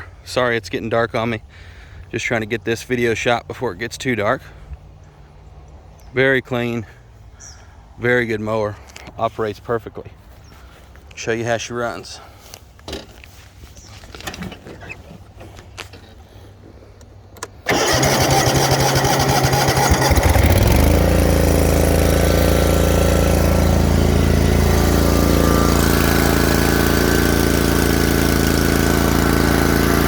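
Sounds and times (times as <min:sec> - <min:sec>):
mower engine starting and running: 0:17.4 - 0:30.0.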